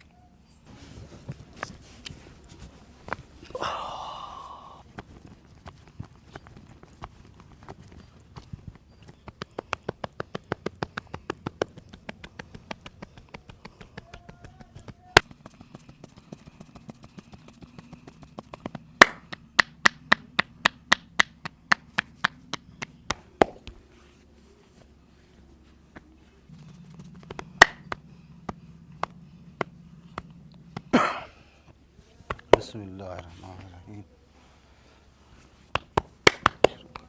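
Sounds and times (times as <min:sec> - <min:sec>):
hand strikes of head massage: 0:01.5 - 0:24.2, 0:26.0 - 0:31.4, 0:32.3 - 0:33.7, 0:35.4 - 0:37.0
loud sharp snap: 0:19.0 - 0:21.8, 0:27.3 - 0:28.0.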